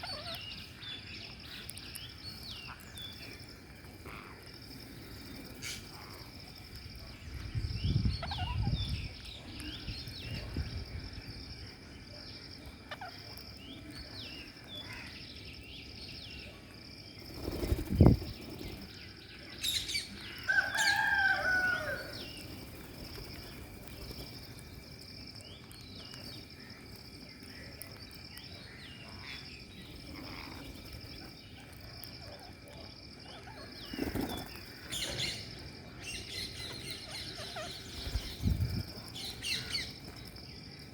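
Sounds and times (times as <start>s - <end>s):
parakeets chirping: 0.0s - 0.8s, 8.1s - 9.2s, 29.0s - 40.4s.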